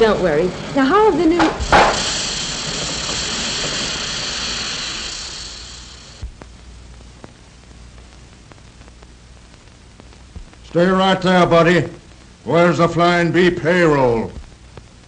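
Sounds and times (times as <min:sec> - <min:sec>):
loud even hiss: 0:01.2 - 0:06.4
faint clicks: 0:06.2 - 0:10.6.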